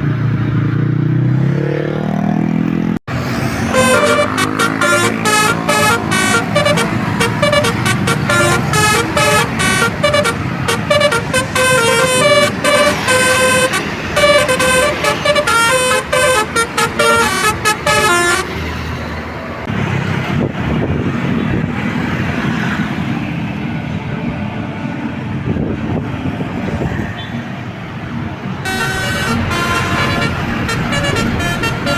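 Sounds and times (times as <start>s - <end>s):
road traffic noise: 0.0s - 31.9s
bus musical air horn melody: 3.3s - 18.8s, 28.6s - 31.9s.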